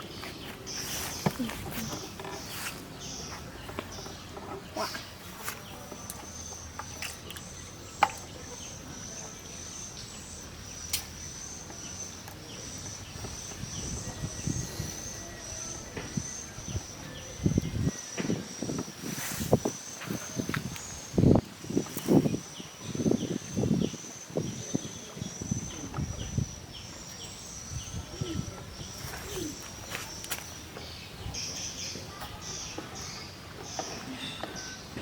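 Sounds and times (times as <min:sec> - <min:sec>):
rustling: 0:00.1 - 0:05.8.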